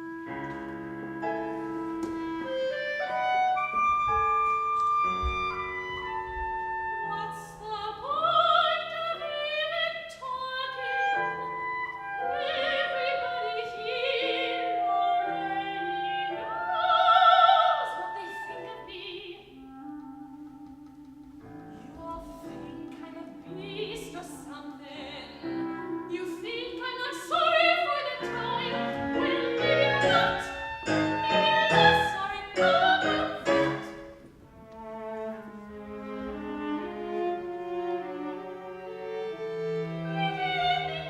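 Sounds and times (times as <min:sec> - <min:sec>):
instrumental accompaniment: 0:00.0 - 0:07.9, 0:17.8 - 0:41.0
soprano singing opera: 0:06.7 - 0:34.2, 0:40.1 - 0:41.0.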